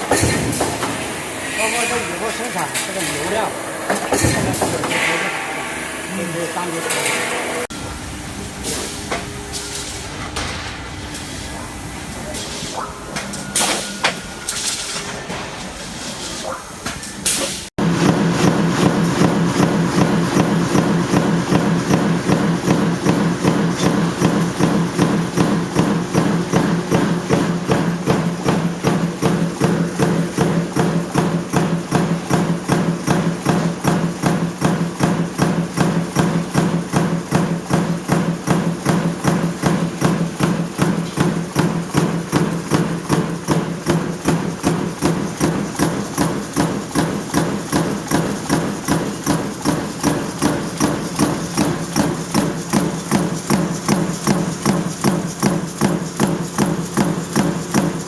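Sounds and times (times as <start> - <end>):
stamping press knocking: 0.0 - 7.7, 17.8 - 58.0
low machine hum: 0.0 - 8.6.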